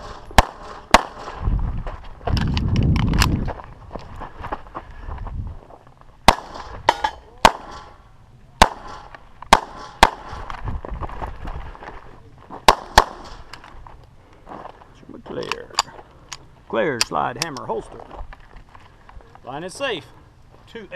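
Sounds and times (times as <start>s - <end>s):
pistol shots: 0.0s - 1.4s, 6.3s - 8.0s, 8.6s - 10.5s, 12.7s - 13.5s.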